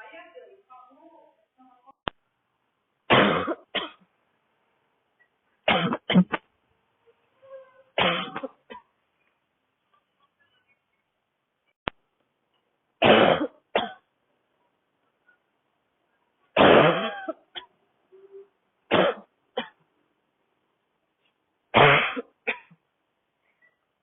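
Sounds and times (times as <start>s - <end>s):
woman coughing: 3.1s - 4.0s, 5.7s - 6.4s, 8.0s - 8.9s, 13.0s - 14.1s, 16.6s - 17.7s, 18.9s - 19.8s, 21.8s - 22.8s.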